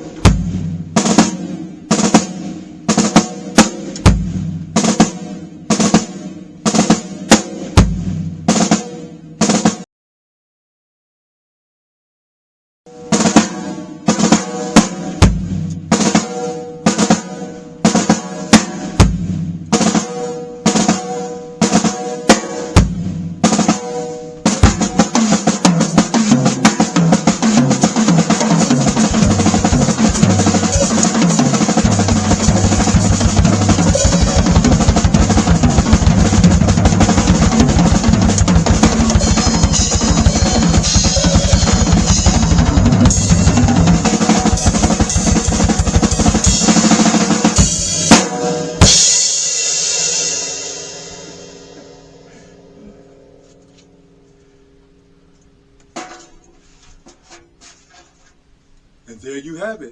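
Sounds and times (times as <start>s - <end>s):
drum rolls and fills: 0.0s - 9.8s, 12.9s - 52.5s
rapid bass drum strokes: 0.0s - 9.8s, 13.0s - 53.4s
snare drum hits ringing: 26.7s - 35.9s, 37.8s - 47.0s.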